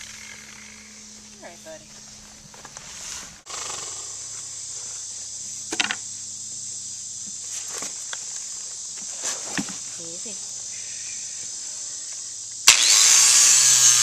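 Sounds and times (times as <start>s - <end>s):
power grinder grinding hoof: 0.0s - 4.9s, 12.6s - 14.0s.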